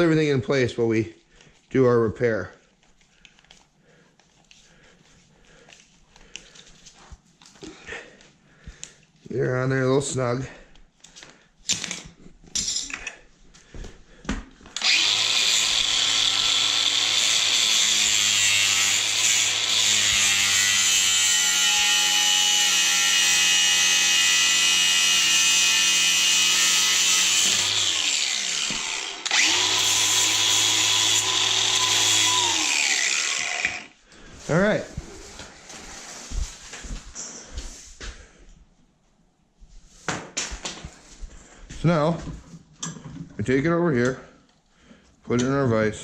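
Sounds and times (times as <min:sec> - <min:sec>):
power drill running: 0:14.8 - 0:34.0.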